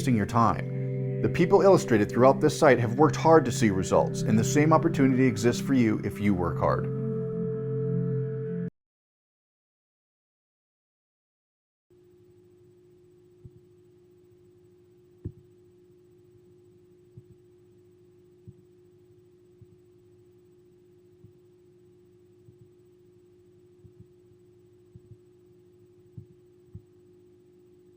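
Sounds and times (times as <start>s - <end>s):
faint steady hum: 12.0s - 27.9s.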